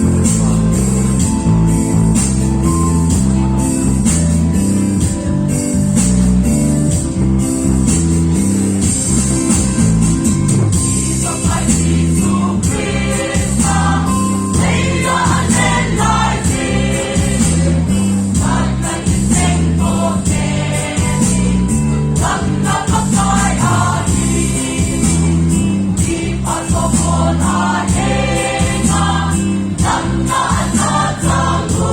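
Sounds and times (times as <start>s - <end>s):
band with steady bass line: 0.0s - 31.9s
group singing: 11.2s - 31.9s.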